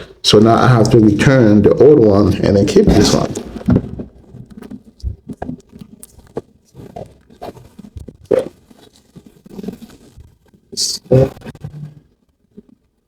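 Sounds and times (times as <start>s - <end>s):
loud thump: 2.8s - 4.2s
cardboard knocks and rustles: 2.8s - 10.2s
cardboard scrape: 2.9s - 10.5s.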